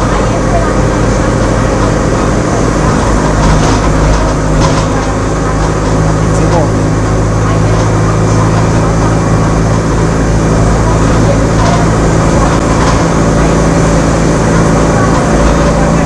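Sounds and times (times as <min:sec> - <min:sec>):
bus diesel engine drone: 0:00.0 - 0:16.0.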